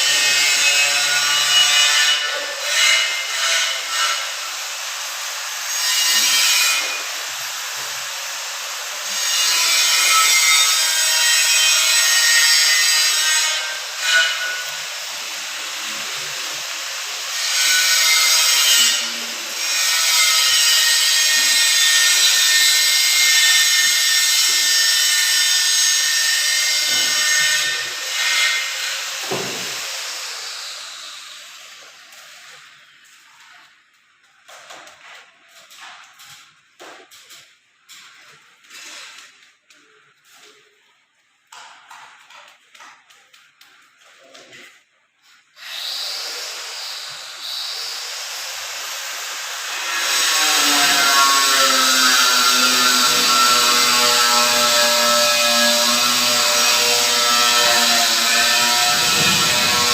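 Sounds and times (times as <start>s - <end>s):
power tool cutting material: 0.0s - 32.4s, 45.6s - 59.9s.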